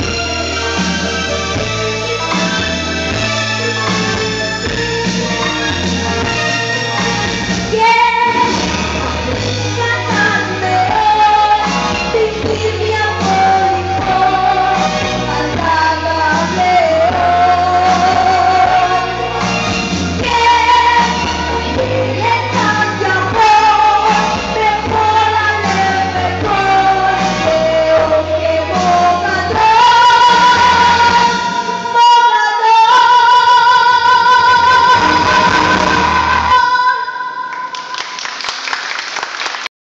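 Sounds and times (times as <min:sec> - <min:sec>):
band with bass line: 0:00.0 - 0:36.8
person singing pop song: 0:00.0 - 0:38.0
people clapping: 0:37.5 - 0:39.7.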